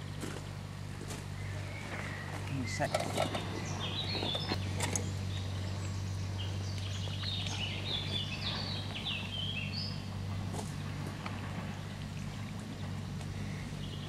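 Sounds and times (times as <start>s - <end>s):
steady low hum: 0.0s - 14.0s
songbird chirping: 1.1s - 14.0s.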